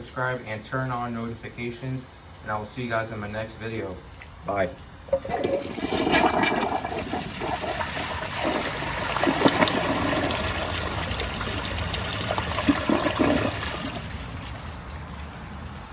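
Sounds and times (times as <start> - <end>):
toilet tank refilling water: 5.1 - 15.4.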